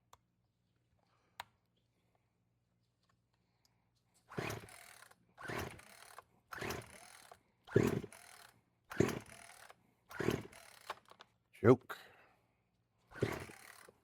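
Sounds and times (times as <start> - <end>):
chainsaw starter cord pulls: 4.3 - 11.3, 13.1 - 14.0.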